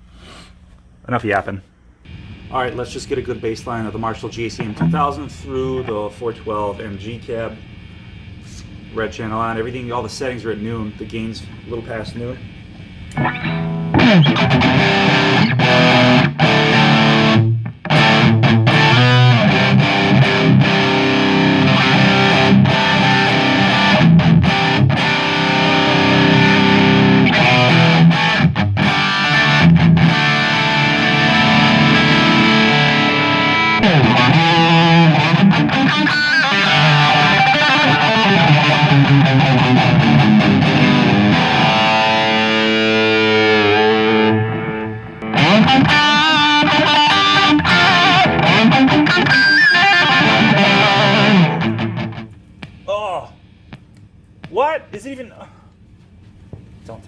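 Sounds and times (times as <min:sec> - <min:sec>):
distorted electric guitar chords: 0:04.0 - 0:06.4, 0:12.9 - 0:52.4.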